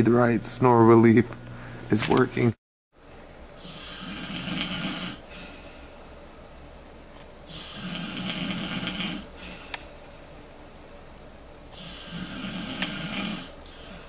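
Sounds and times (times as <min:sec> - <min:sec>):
quiet breathing: 0:01.5 - 0:01.9, 0:03.6 - 0:06.7, 0:07.5 - 0:11.0, 0:11.7 - 0:14.0
person snoring loudly: 0:03.6 - 0:05.5, 0:07.5 - 0:09.4, 0:11.7 - 0:14.0.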